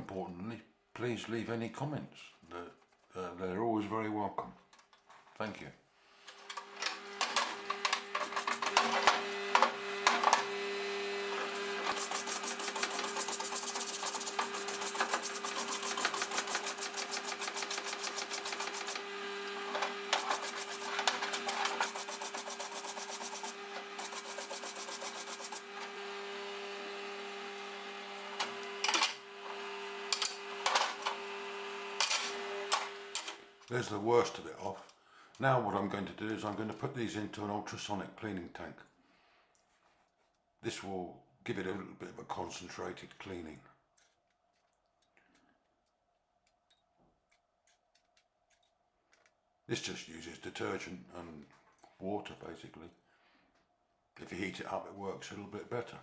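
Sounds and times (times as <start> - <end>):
power tool motor humming: 6.4 - 33.4
rasping strokes against metal: 11.3 - 25.8.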